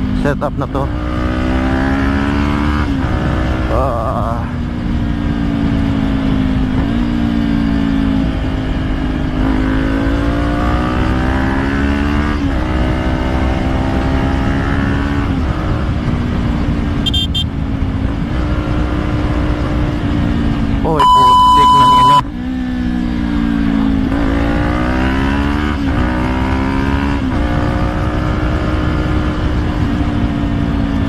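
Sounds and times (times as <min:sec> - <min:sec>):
high chirp: 0:20.9 - 0:22.2.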